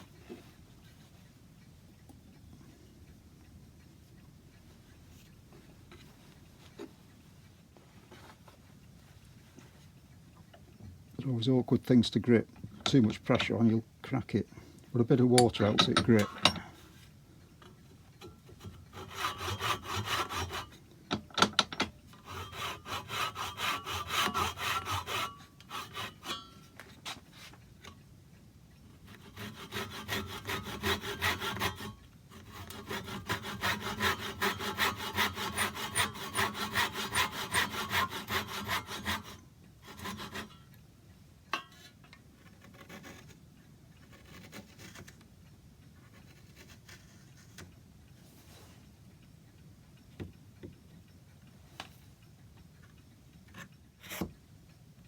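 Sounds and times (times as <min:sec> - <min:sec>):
hand saw cutting wood: 0:18.5 - 0:20.8, 0:22.1 - 0:27.5, 0:29.0 - 0:40.7, 0:41.6 - 0:43.4, 0:44.0 - 0:45.2, 0:53.6 - 0:54.3.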